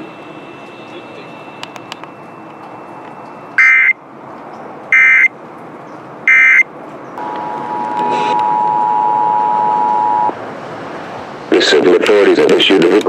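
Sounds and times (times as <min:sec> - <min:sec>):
two-tone attention signal: 0:00.0 - 0:04.0, 0:04.9 - 0:05.3, 0:06.3 - 0:06.6, 0:07.2 - 0:10.3
screechy digital data bursts: 0:07.2 - 0:10.3.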